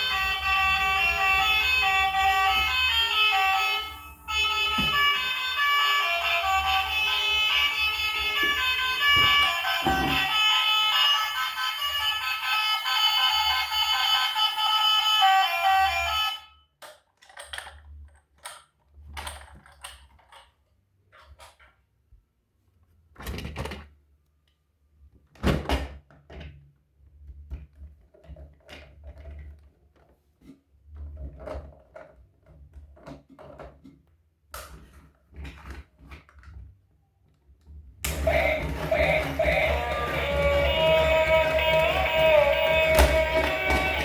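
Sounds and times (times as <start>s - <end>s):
music: 0.0s - 16.4s, 38.1s - 44.0s
plastic toys knocking and clicking: 6.6s - 10.6s, 16.8s - 22.0s, 25.4s - 44.0s.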